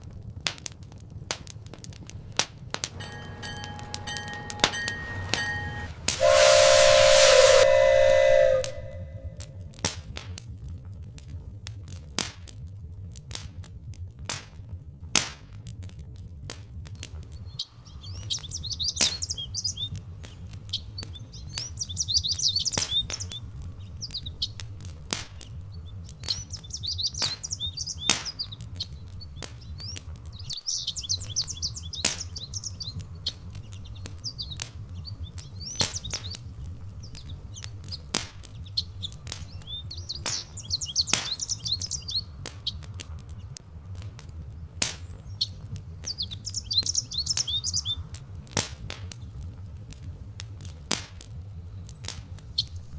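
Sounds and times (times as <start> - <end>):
wood fire crackling and popping: 0.0 - 3.0, 16.5 - 52.9
songbird twittering: 2.9 - 9.3, 17.3 - 43.5, 45.1 - 48.1
low steady rumble: 2.9 - 9.5.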